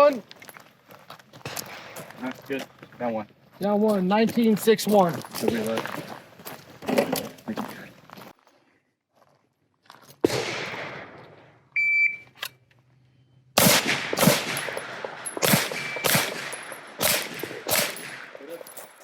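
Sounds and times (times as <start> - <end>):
pistol shots: 1.4 - 2.2, 10.2 - 11.6, 13.6 - 18.6
shot timer beep: 11.8 - 12.3, 15.8 - 16.1.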